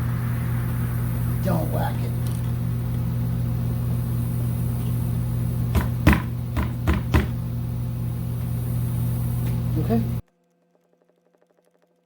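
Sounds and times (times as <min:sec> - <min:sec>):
steady low hum: 0:00.0 - 0:10.2
short knocks on motorcycle part: 0:05.7 - 0:07.4.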